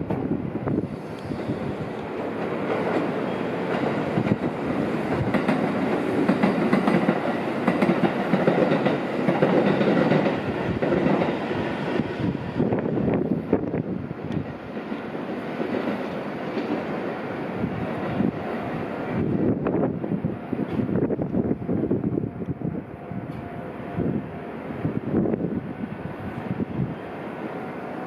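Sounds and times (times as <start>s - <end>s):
train wheels clacking over rail joints: 1.1s - 11.5s.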